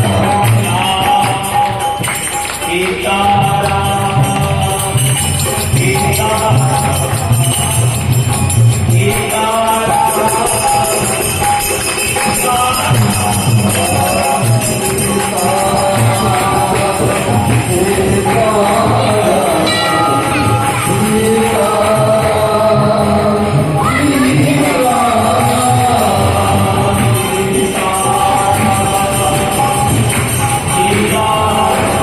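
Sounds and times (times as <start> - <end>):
small cymbals jingling: 0.0 - 32.0
harmonium sustained reed tones: 3.8 - 22.3.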